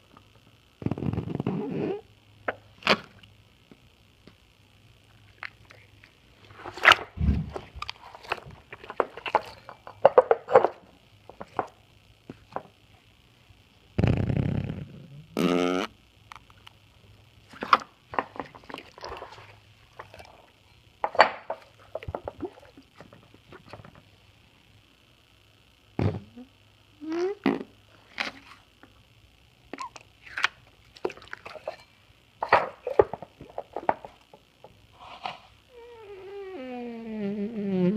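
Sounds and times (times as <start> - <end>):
fart-like squeak: 0.8 - 2.1, 14.0 - 16.0, 27.0 - 27.8, 35.7 - 37.9
slime squelching: 29.8 - 31.9.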